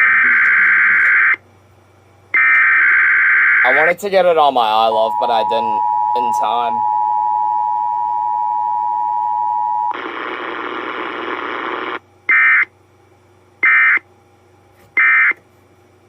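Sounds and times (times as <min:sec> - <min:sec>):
static hiss: 0:10.0 - 0:12.0.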